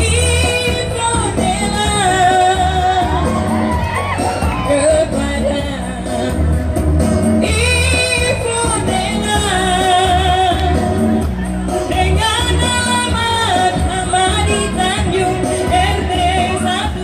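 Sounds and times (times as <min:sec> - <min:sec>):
person singing pop ballad: 0:00.0 - 0:17.0
pulsing bass: 0:00.0 - 0:17.0.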